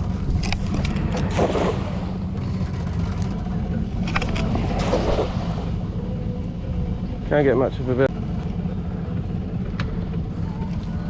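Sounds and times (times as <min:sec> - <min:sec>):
outboard motor idling: 0:00.0 - 0:11.0.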